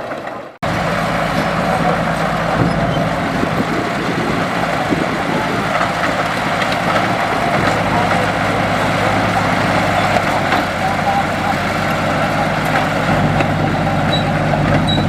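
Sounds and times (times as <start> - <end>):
heavy diesel engine running: 0.0 - 15.0.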